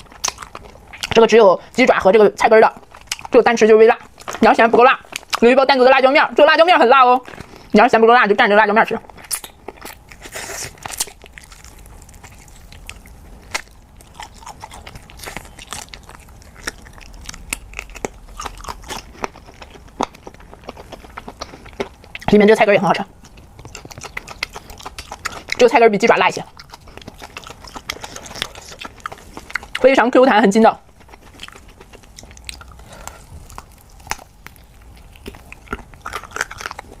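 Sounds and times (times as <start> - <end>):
crunchy bites: 0.0 - 1.2, 9.0 - 22.3, 23.2 - 25.6, 30.9 - 37.0
wet chewing clicks: 0.0 - 7.8, 8.8 - 37.0.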